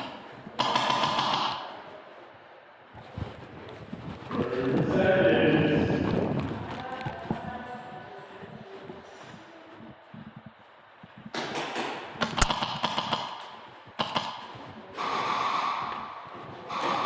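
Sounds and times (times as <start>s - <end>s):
airsoft gun shots: 12.4s - 13.2s.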